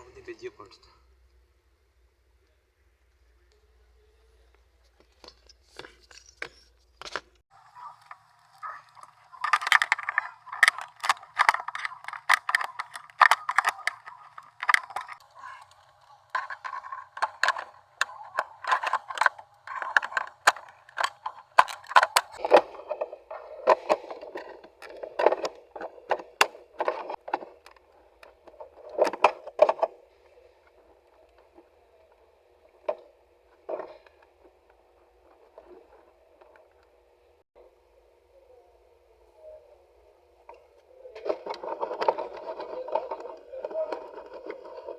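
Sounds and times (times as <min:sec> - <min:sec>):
plastic parts clicking and tapping: 0:05.0 - 0:37.0.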